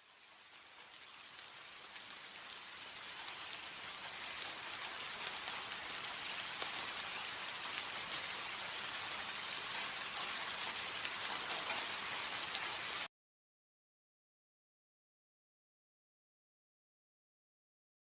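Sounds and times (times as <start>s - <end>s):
rain pattering: 0.0s - 13.1s.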